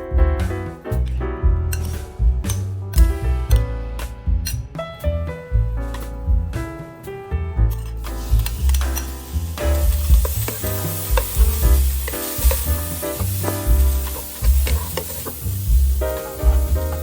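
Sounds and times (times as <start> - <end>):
food sizzling in a pan: 8.0 - 17.0
utensil stirring food: 8.0 - 17.0.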